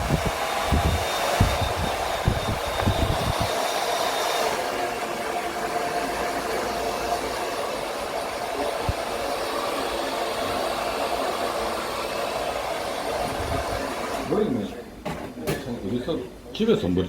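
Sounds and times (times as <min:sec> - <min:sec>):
thin high whine: 0:00.0 - 0:11.1
hair dryer running: 0:00.0 - 0:14.5.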